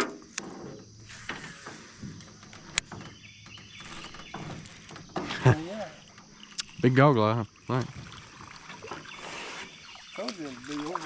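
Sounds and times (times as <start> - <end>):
sharp clicks and light knocks: 0.0 - 6.8
faint outdoor background: 0.0 - 11.0.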